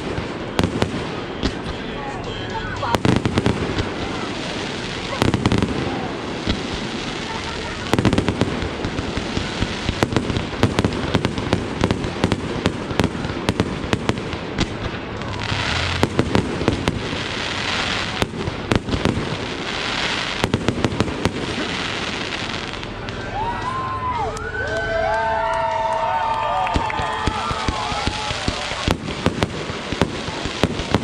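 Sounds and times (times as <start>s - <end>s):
firework bangs and cracks: 0.0s - 23.8s, 26.3s - 31.0s
crackling hiss of fireworks: 0.0s - 24.2s, 24.8s - 31.0s.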